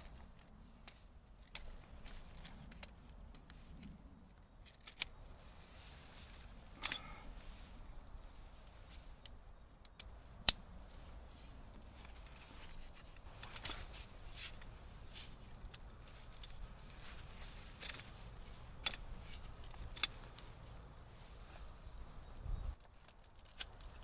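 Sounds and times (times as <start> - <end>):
scraping rustle: 4.6 - 9.3, 10.8 - 24.0.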